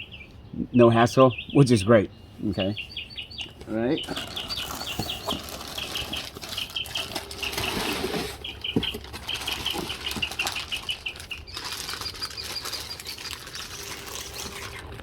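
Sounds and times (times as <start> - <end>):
small bird chirping: 0.0 - 15.0
packaging rustling: 4.0 - 15.0.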